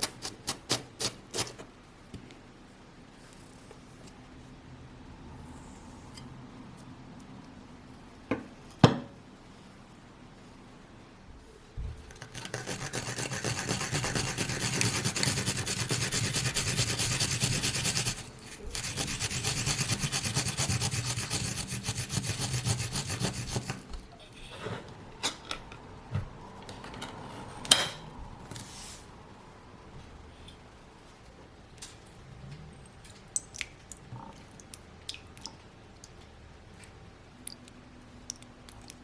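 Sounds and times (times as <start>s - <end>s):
rasping food preparation strokes: 12.1s - 24.8s.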